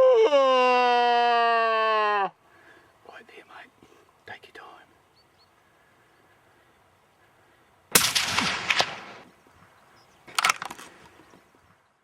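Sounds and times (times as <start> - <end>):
rifle shot: 7.9 - 9.3.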